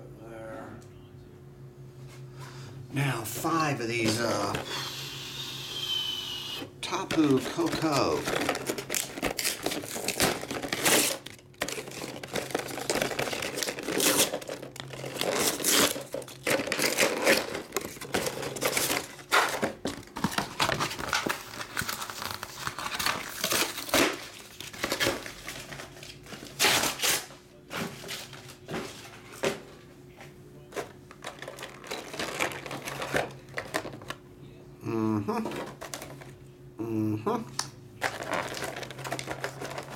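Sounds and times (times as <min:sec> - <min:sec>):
plastic wrapping crinkling and tearing: 0:06.9 - 0:27.3, 0:38.0 - 0:39.9.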